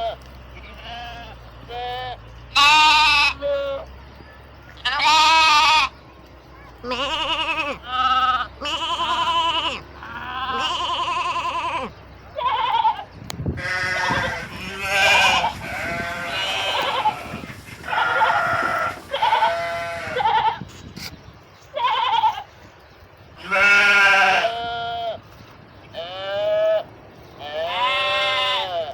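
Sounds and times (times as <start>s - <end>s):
sheep bleating: 0.0s - 3.9s, 4.8s - 5.9s, 6.8s - 20.6s, 23.4s - 25.2s, 27.4s - 28.9s.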